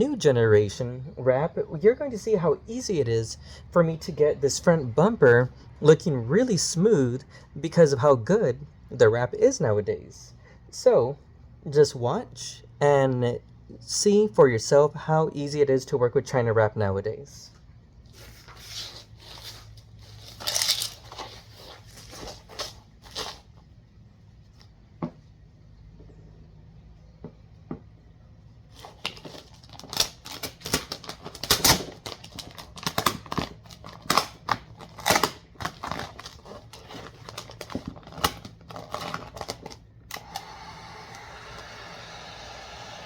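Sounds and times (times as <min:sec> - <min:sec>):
vinyl film crackling and snapping: 0:20.3 - 0:21.3, 0:28.7 - 0:40.4.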